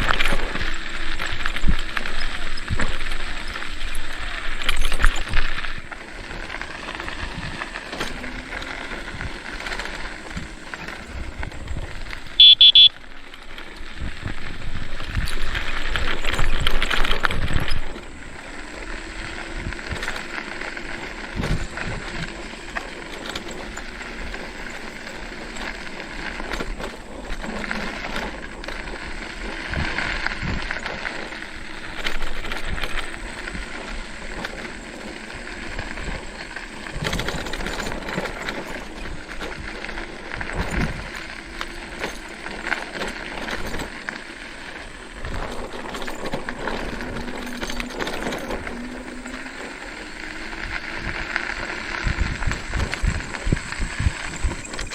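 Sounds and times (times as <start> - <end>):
tyre rumble and rattling: 0.0 - 54.9
short high pulsed beep: 12.4 - 12.9.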